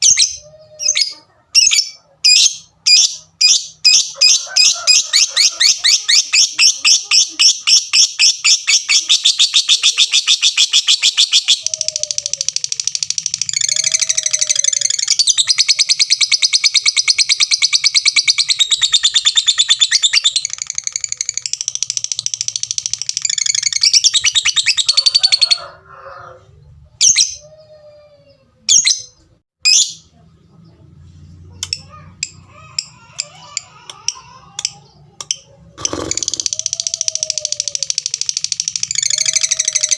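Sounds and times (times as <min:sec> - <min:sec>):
lovebird chattering trill: 0:00.0 - 0:25.6, 0:31.6 - 0:39.9
sharp bird chirps: 0:01.0 - 0:25.4, 0:35.8 - 0:39.9.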